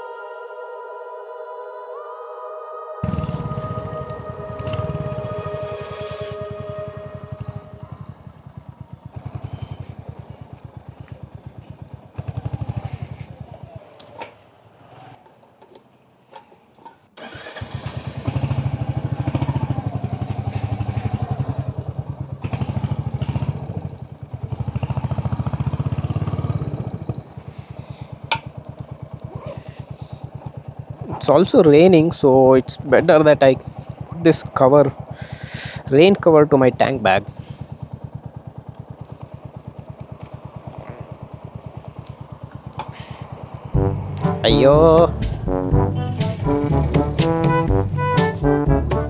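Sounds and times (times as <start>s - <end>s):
motorcycle engine thumping: 18.4s - 31.3s, 37.2s - 49.0s.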